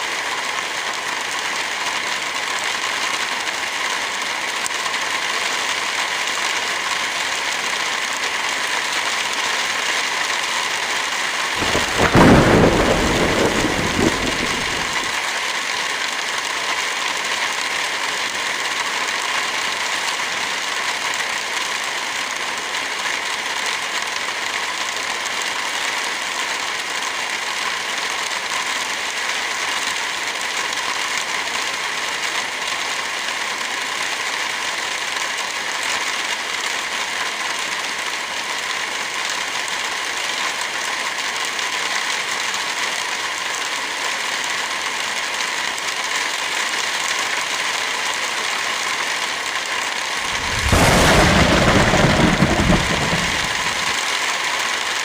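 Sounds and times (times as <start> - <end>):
steady rain: 0.0 - 55.0
wood fire crackling: 11.6 - 15.2, 50.2 - 54.0.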